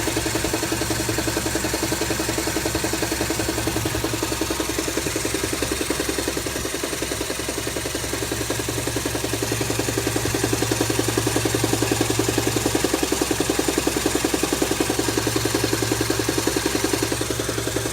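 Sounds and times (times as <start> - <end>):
car engine idling: 0.0 - 17.9
engine knocking: 0.0 - 17.9.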